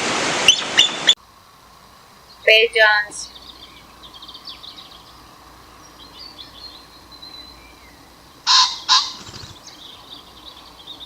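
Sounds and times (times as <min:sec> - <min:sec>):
small birds twittering: 0:02.1 - 0:11.0
loud harsh bird calls: 0:06.1 - 0:11.0.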